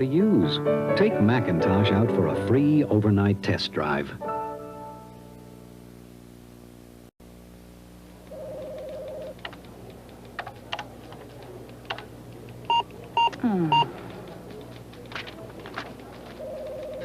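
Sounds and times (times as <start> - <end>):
steady buzzing tone: 4.4 - 9.4
keyboard keys clicking: 8.6 - 17.0.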